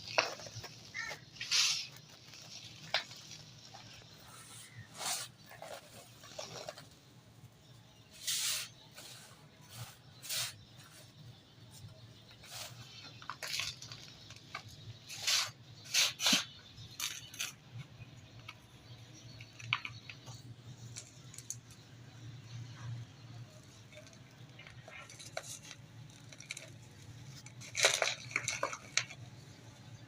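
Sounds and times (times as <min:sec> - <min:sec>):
dry dirt crunching: 0:00.0 - 0:07.2.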